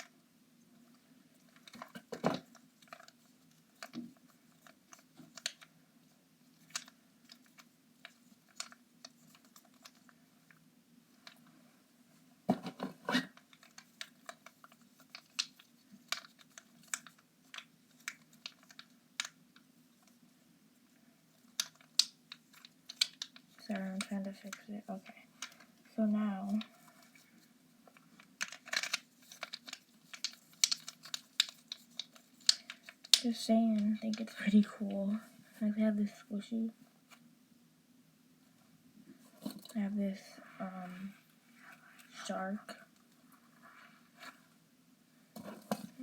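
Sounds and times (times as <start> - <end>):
faint low hum: 0.0 - 46.0
plastic fidget toy clicking: 21.4 - 24.6, 28.4 - 33.4.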